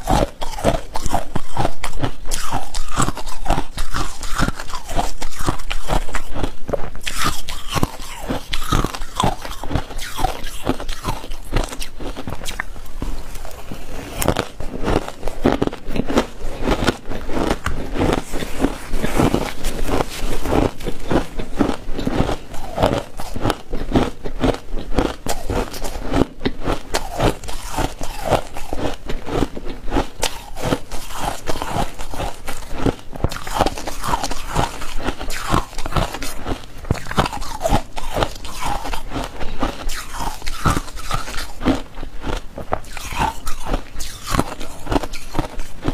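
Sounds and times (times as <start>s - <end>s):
ice crunching being chewed: 0.0s - 45.9s.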